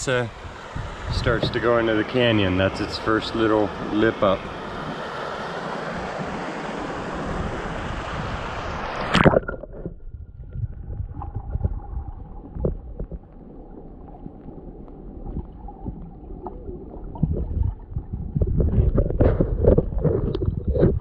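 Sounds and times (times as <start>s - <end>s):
wind on microphone: 0.0s - 5.1s, 5.9s - 13.2s, 17.1s - 21.0s
paddle splashing water: 0.4s - 21.0s
water knocking against hull: 9.2s - 13.4s, 17.1s - 21.0s.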